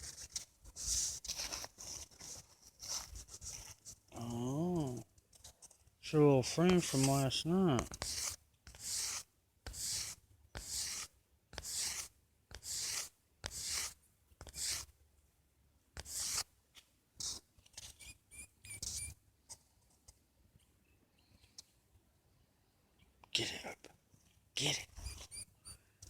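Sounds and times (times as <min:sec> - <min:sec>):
cat pawing with scratchy scrapes: 0:00.0 - 0:04.1
faint high mouse squeaks: 0:17.8 - 0:19.2, 0:25.0 - 0:26.0.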